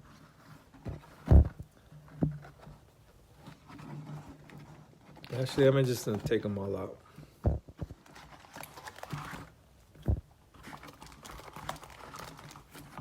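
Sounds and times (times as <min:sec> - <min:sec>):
foil wrappers rustling: 0:07.9 - 0:13.0.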